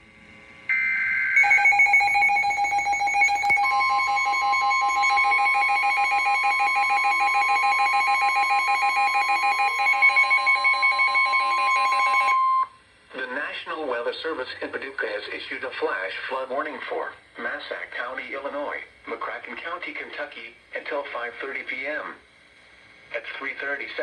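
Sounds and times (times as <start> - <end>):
pulsing electronic alarm beep: 0.7 - 12.7
steady single-pitch warning tone: 0.7 - 12.8.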